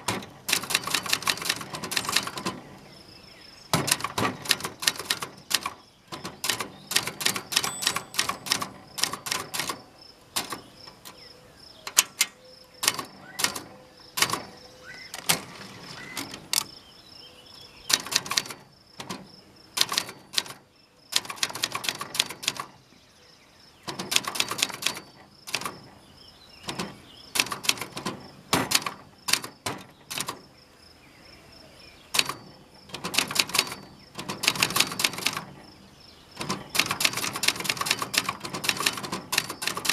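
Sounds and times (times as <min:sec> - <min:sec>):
typewriter keystroke clacks: 0:00.0 - 0:02.6, 0:03.7 - 0:11.2, 0:11.8 - 0:14.6, 0:15.2 - 0:16.7, 0:17.9 - 0:22.8, 0:23.9 - 0:25.9, 0:26.7 - 0:30.4, 0:32.2 - 0:35.6, 0:36.4 - 0:39.9
metal table rattling: 0:00.0 - 0:02.8, 0:03.8 - 0:11.0.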